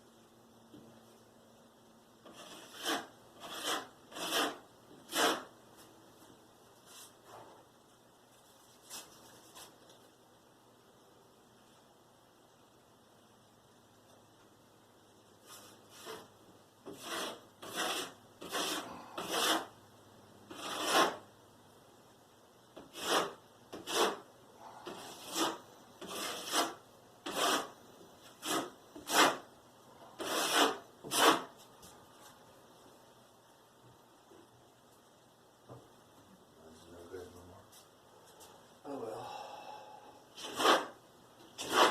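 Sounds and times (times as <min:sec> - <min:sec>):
hand tool rasping on drywall: 0:02.2 - 0:05.5, 0:15.6 - 0:19.8, 0:20.5 - 0:21.2, 0:22.8 - 0:29.5, 0:30.2 - 0:31.5, 0:40.4 - 0:41.9.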